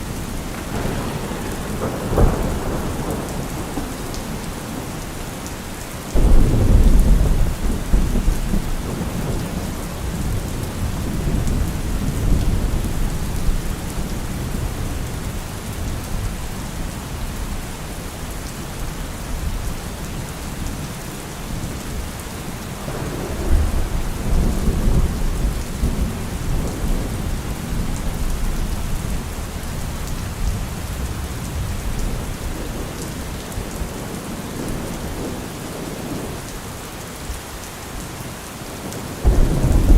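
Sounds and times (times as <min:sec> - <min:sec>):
thunder rumbling: 0:00.0 - 0:17.0, 0:22.7 - 0:36.4, 0:39.2 - 0:39.9
steady rain: 0:00.0 - 0:39.9.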